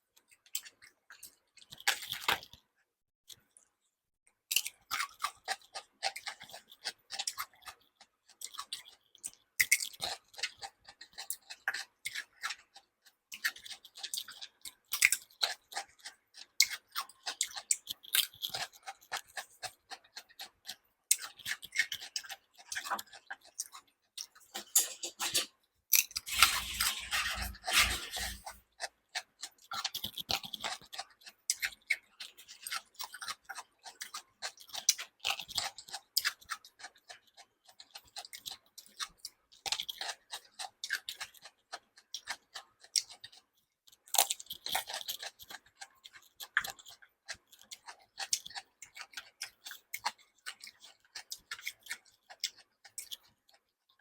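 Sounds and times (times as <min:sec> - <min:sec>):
person chewing with wet smacks: 0:00.1 - 0:02.6, 0:04.5 - 0:25.4, 0:26.0 - 0:54.0.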